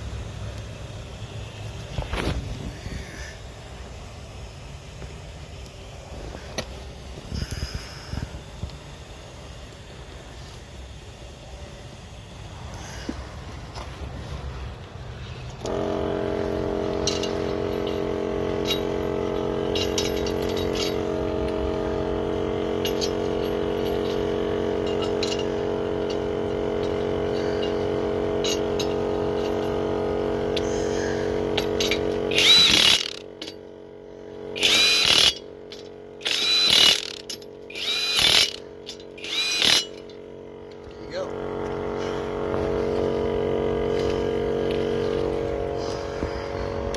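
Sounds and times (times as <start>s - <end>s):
air compressor motor running: 0.0s - 46.9s
loud power tool bursts: 15.6s - 46.9s.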